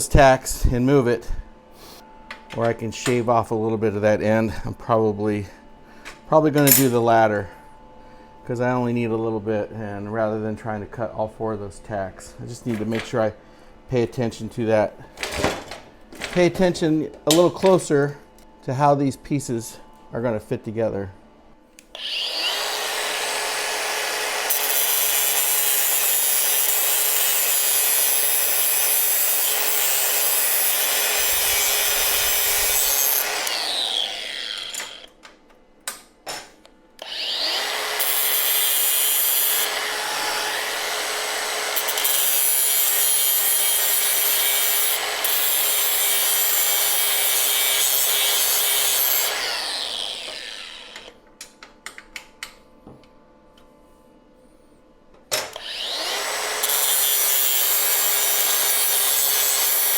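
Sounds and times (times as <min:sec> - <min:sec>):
angle grinder grinding metal: 0:06.6 - 0:07.1, 0:22.0 - 0:35.2, 0:37.0 - 0:51.2, 0:55.6 - 0:59.9.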